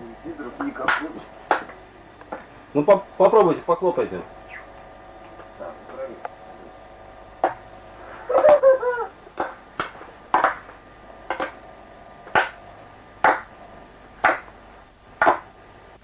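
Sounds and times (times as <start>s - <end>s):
hands clapping: 13.2s - 13.5s, 14.2s - 14.5s, 15.2s - 15.5s.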